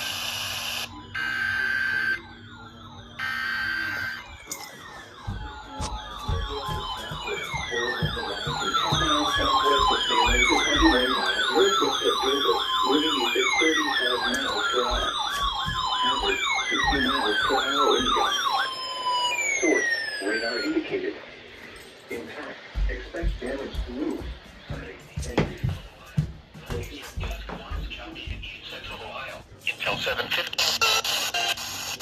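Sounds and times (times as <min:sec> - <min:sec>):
warbling siren yelp: 0:00.0 - 0:21.4
wailing siren: 0:00.0 - 0:28.9.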